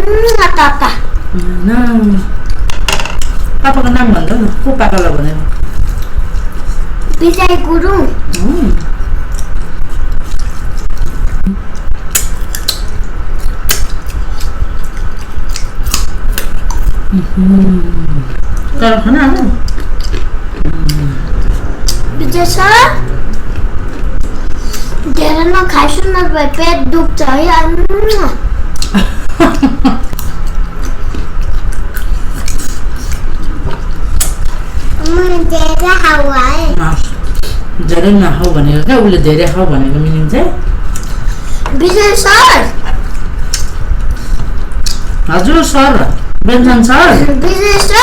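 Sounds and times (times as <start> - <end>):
low hum: 0.0 - 48.0
small clicks of eating: 8.3 - 17.0, 43.4 - 45.2.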